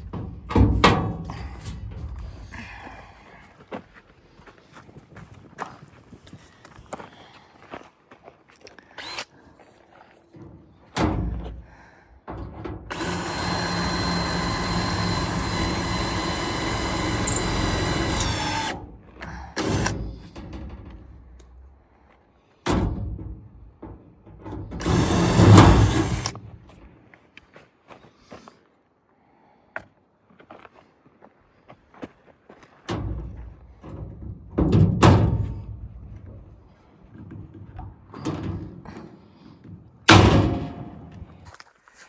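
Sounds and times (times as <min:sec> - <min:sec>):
power drill drilling metal: 0:09.0 - 0:09.2, 0:12.9 - 0:20.4, 0:24.7 - 0:26.4.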